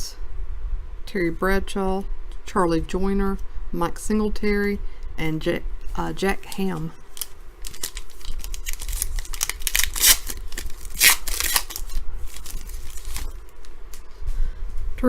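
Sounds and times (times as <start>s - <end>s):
cards being handled: 6.5s - 14.1s
foil pack crinkling and tearing: 7.0s - 14.0s.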